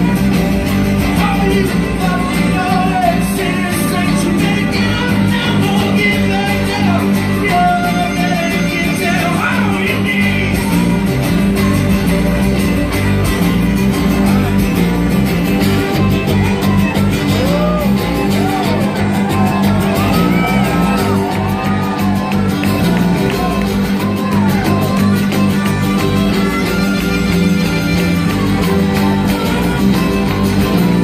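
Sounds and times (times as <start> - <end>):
live band playing: 0.0 - 31.0
voices shouting and whooping: 17.2 - 26.5.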